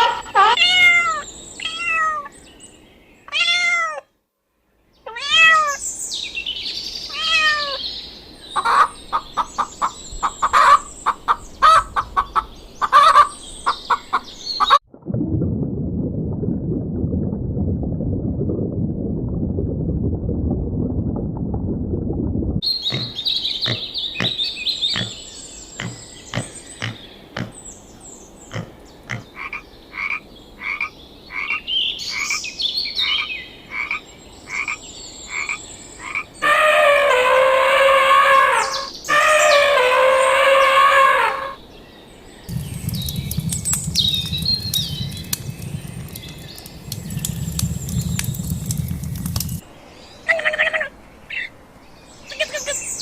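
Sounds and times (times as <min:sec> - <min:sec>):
low rumble: 0:14.9 - 0:22.6, 0:42.5 - 0:49.6
faint high chirps: 0:42.5 - 0:49.6
frog croaking: 0:42.5 - 0:49.6.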